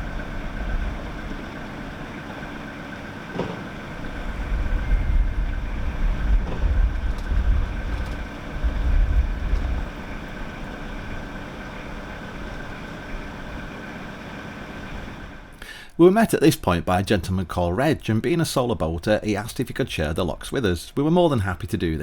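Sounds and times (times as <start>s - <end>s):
wind buffeting microphone: 0.0s - 15.4s
boat engine idling: 0.0s - 22.0s.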